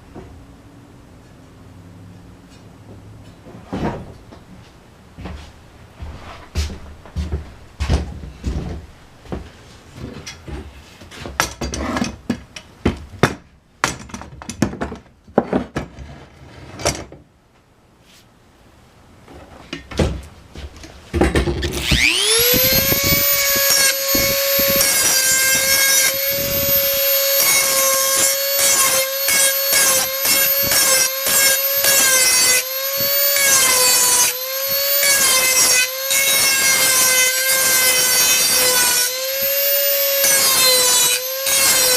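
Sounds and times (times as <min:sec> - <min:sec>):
rotary tool high whine: 0:21.6 - 0:41.9
grinding rasp: 0:21.7 - 0:41.9.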